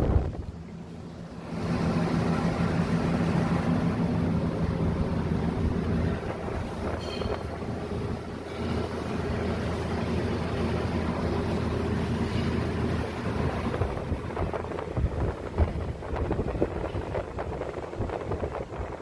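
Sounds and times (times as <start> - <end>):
car engine humming: 0.0 - 15.0.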